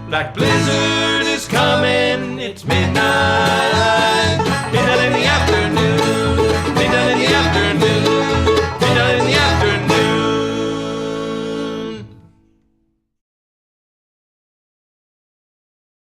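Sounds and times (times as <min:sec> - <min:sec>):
bluegrass band with banjo and guitar: 0:00.0 - 0:12.2.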